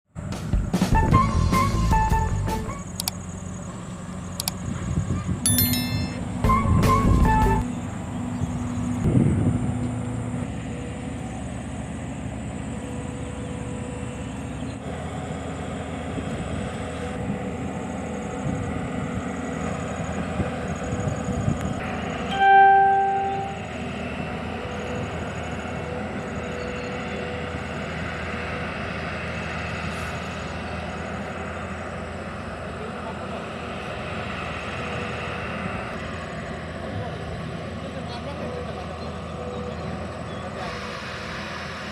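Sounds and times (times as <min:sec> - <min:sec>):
excavator diesel engine running: 0:00.2 - 0:05.4, 0:06.2 - 0:41.9.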